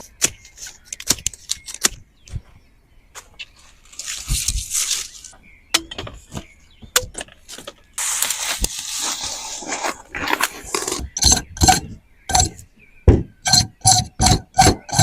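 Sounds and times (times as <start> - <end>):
dry rustling and crackling: 3.2 - 6.4, 7.2 - 12.5
sharp knocks: 11.2 - 15.0.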